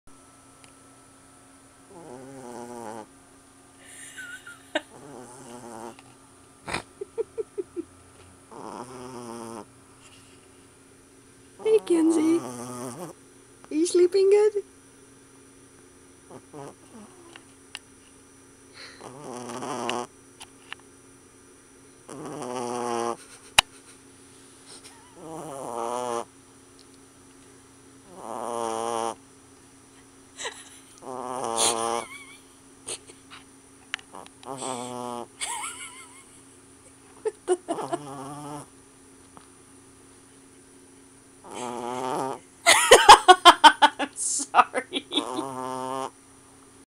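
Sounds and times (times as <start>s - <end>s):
puppy snoring: 1.9s - 3.1s, 4.2s - 7.8s, 8.5s - 10.2s, 11.6s - 13.2s, 16.3s - 17.4s, 18.8s - 20.1s, 22.0s - 23.6s, 24.7s - 26.3s, 28.0s - 29.2s, 30.4s - 33.4s, 34.0s - 35.4s, 37.2s - 38.8s, 41.4s - 42.5s, 44.9s - 46.2s.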